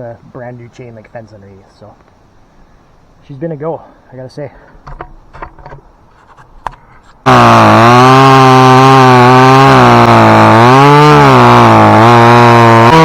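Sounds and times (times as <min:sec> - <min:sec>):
chainsaw cutting wood: 0:07.2 - 0:13.0.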